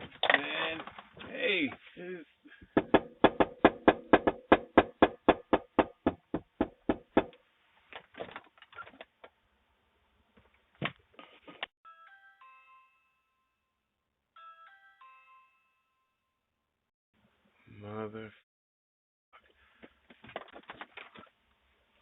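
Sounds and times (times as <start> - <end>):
fist pounding on door: 2.8 - 7.3
doorbell chime melody: 11.8 - 16.5.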